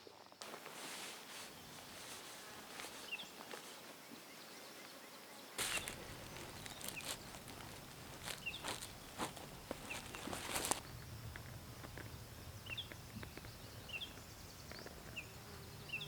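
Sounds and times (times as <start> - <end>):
outdoor background hiss: 0.0 - 16.0
soft rustles and crunches: 0.4 - 4.0, 5.6 - 10.8
birds chirping: 1.2 - 11.1, 12.0 - 16.0.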